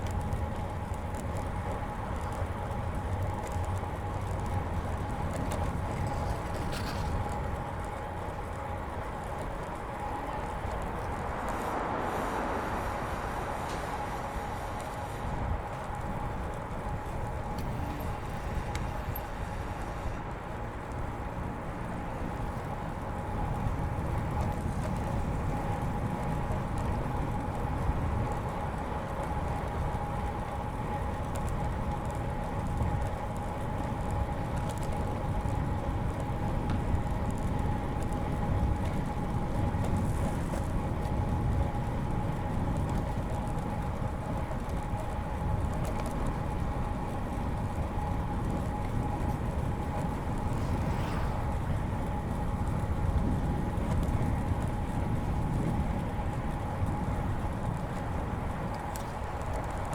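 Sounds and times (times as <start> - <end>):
bicycle tyres and wind rumble: 0.0 - 59.9
thin steady whine: 4.4 - 25.9, 46.8 - 54.4.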